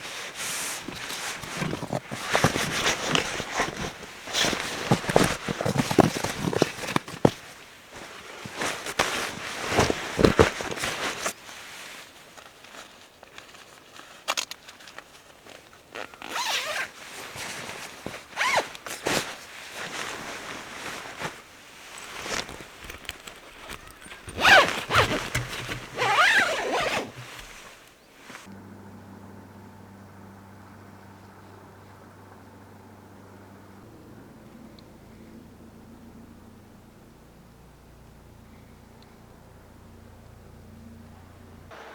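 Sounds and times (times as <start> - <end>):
zippers pulled open and shut: 0.3 - 7.6, 8.4 - 11.4, 16.0 - 19.4, 22.0 - 27.8.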